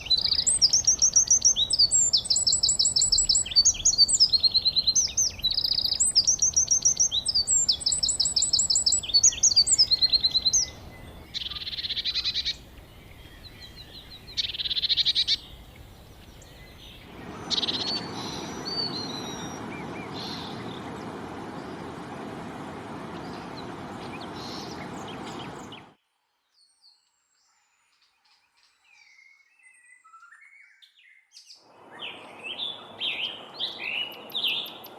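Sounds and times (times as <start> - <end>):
songbirds trilling: 0.0 - 25.9, 31.8 - 34.9
steady hiss: 15.5 - 25.9.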